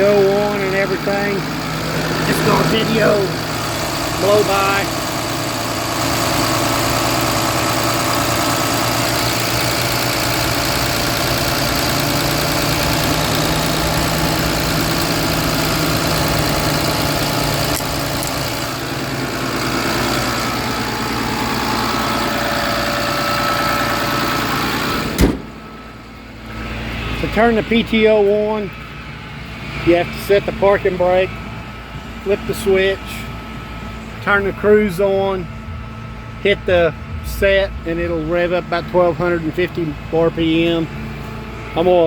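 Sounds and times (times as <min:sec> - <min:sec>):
truck engine idling: 0:00.0 - 0:42.0
sharp knock: 0:25.2 - 0:25.6.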